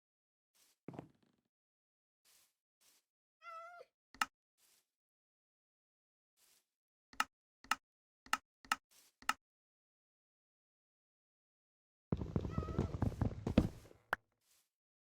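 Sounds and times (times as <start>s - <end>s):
cat meowing: 3.4s - 3.9s, 12.5s - 13.0s.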